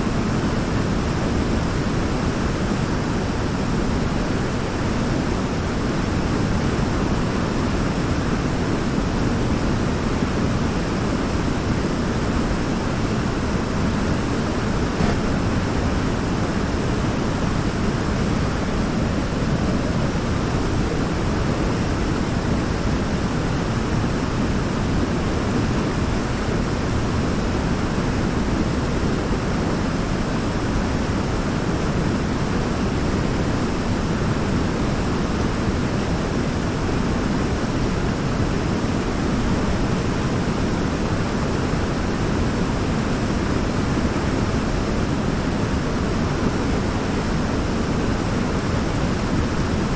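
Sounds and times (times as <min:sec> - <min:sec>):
small waterfall rushing roar: 0:10.0 - 0:49.9.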